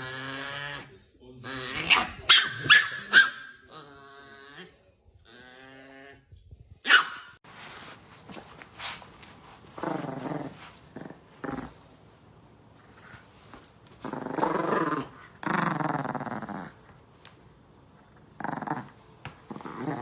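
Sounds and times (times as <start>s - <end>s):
small dog growling: 0.0s - 2.0s, 3.7s - 6.3s, 9.8s - 11.8s, 14.0s - 16.9s, 18.1s - 20.0s.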